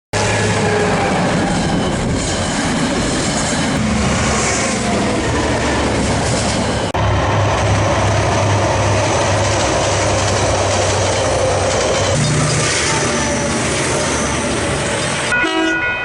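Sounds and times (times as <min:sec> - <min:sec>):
train rumbling on rails: 0:00.1 - 0:16.0.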